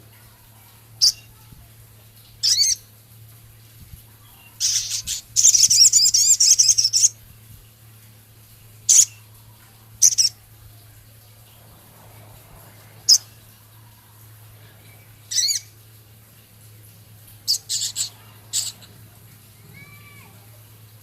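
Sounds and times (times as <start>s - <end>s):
faint low hum: 0.0s - 21.0s
songbird singing high calls: 2.4s - 2.8s, 4.2s - 7.2s, 8.9s - 9.3s, 10.0s - 10.4s, 14.8s - 15.7s, 17.4s - 18.9s
bird warbling trill: 2.4s - 2.9s, 4.3s - 7.2s, 8.9s - 9.3s, 10.0s - 10.4s, 15.0s - 15.8s, 17.4s - 19.0s.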